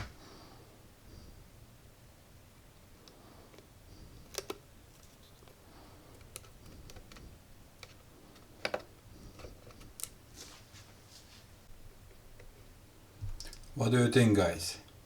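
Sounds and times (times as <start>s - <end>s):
plastic parts clicking: 4.2s - 4.6s, 6.2s - 7.2s.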